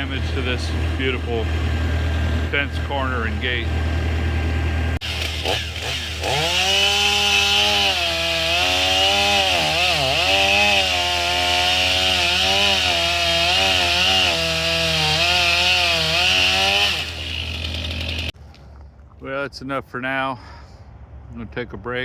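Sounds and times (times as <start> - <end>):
tractor engine idling: 0.0 - 6.7, 17.1 - 18.4
chainsaw cutting wood: 5.0 - 18.4.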